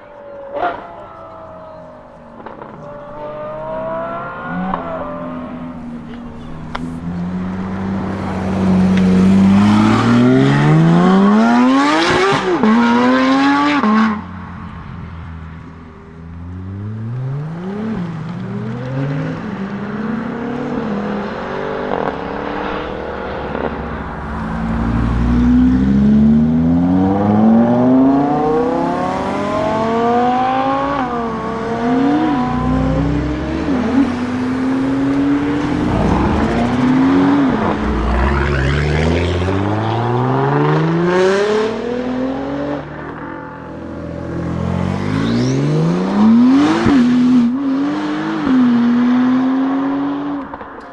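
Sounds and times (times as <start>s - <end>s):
sports car engine accelerating: 1.2s - 50.9s.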